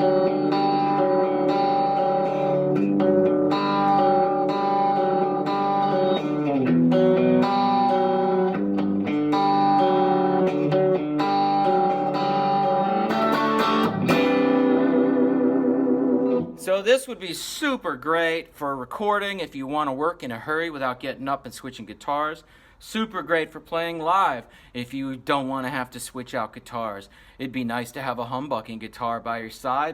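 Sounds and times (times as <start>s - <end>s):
electric guitar chords and notes: 0.0s - 16.7s.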